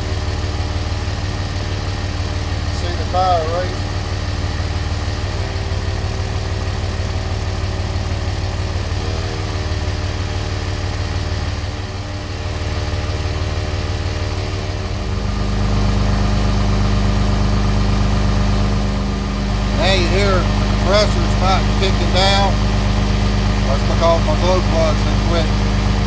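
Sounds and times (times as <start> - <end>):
deep hum: 0.0 - 26.0
diesel engine idling: 0.0 - 26.0
portable air compressor running: 0.0 - 26.0.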